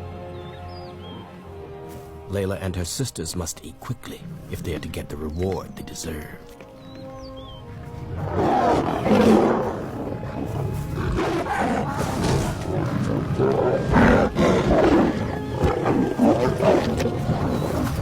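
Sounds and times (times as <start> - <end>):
background music: 0.0 - 18.0
lions growling and roaring: 7.4 - 18.0.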